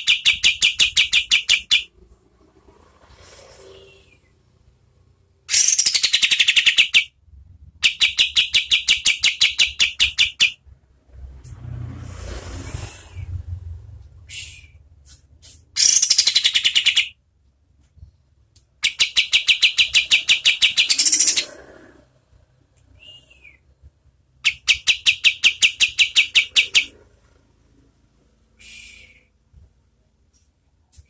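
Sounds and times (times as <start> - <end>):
songbird rapid trill: 18.8 - 21.5.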